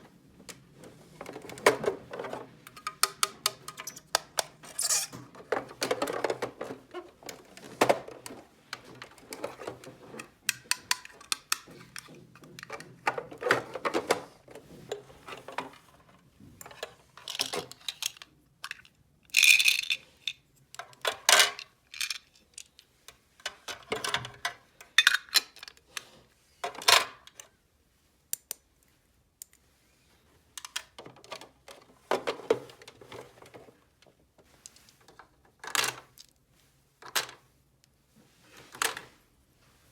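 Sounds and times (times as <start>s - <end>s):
plastic toy pieces clicking: 17.3s - 20.3s.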